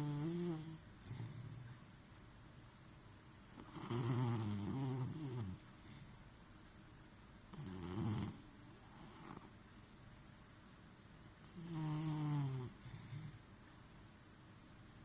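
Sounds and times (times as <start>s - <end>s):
person snoring: 0.0s - 1.7s, 3.6s - 5.6s
snort: 0.0s - 1.8s, 3.5s - 6.1s, 7.5s - 9.6s, 11.5s - 13.5s.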